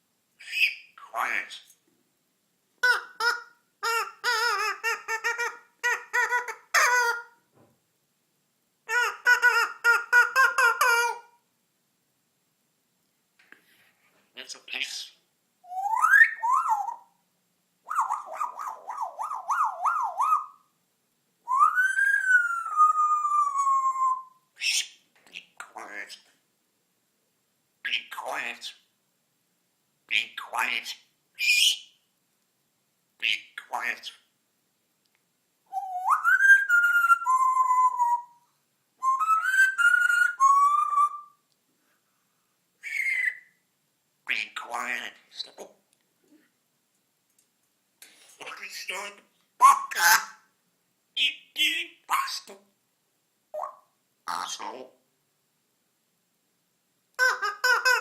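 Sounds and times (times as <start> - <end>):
parrot whistling: 15.7 - 17.1, 17.9 - 20.6, 21.5 - 25.0, 35.7 - 38.4, 39.0 - 41.4, 42.8 - 43.6.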